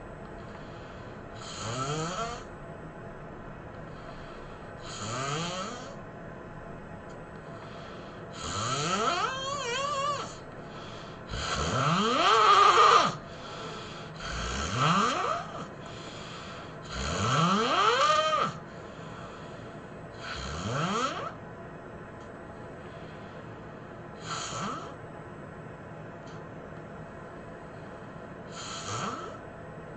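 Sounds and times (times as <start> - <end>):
person snoring loudly: 1.4 - 2.5, 4.8 - 6.0, 8.3 - 10.4, 11.3 - 15.7, 16.8 - 18.6, 20.2 - 21.4, 24.2 - 25.0, 28.5 - 29.4.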